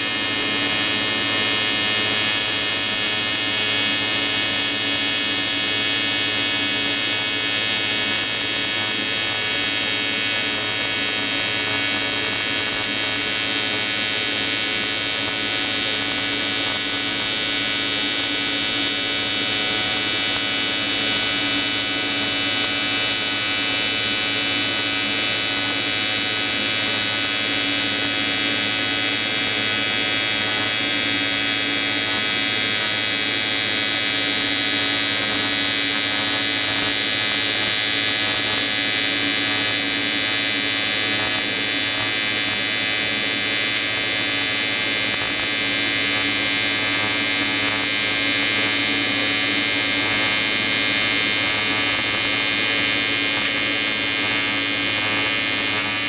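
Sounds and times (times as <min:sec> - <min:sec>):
welding arc buzzing: 0:00.0 - 0:56.0.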